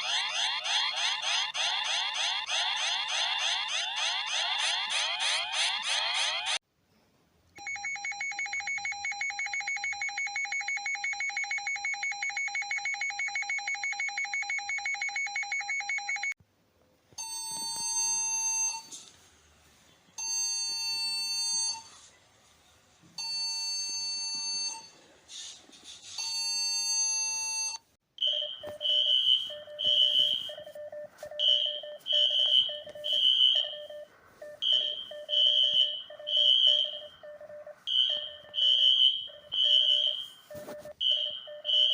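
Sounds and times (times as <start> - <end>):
fast-pulsing alarm tone: 0.0 - 6.6
long alarm beeps: 26.3 - 41.9
short alarm beeps: 26.3 - 41.9.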